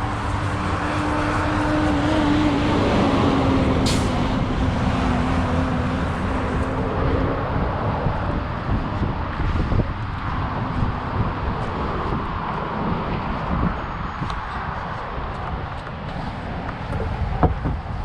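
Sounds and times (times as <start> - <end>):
heavy vehicle engine droning past: 0.0 - 10.0
road rumble: 0.0 - 18.0.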